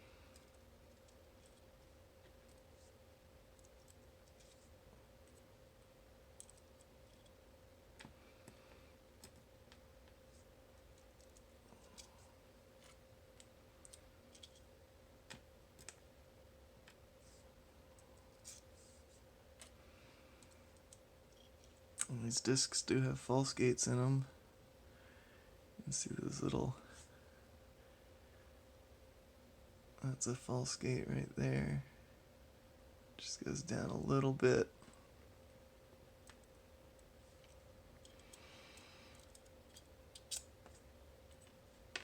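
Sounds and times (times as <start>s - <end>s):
faint steady hum: 0.0s - 42.0s
small metal parts clicking: 13.4s - 14.6s, 39.1s - 40.8s.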